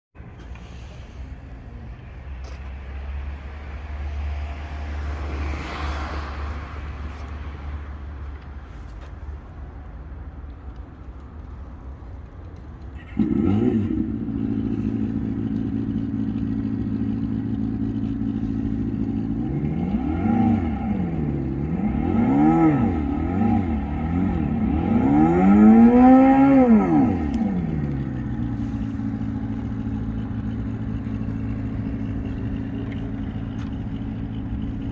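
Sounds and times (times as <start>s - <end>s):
synthetic motorcycle engine revving: 13.0s - 32.9s.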